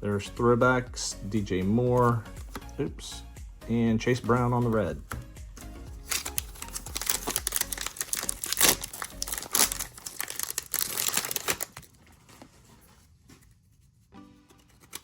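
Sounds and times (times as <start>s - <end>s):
plastic wrapper crinkling and tearing: 6.0s - 12.7s.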